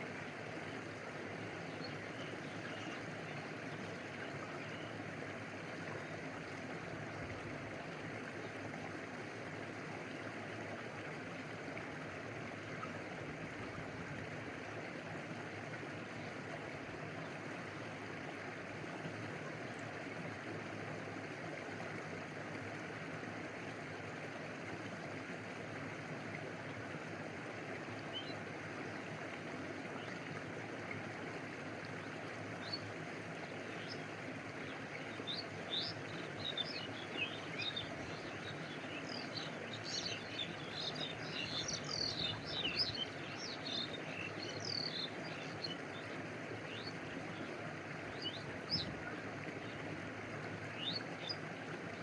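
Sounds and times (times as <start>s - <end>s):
stream water flowing: 0.0s - 52.0s.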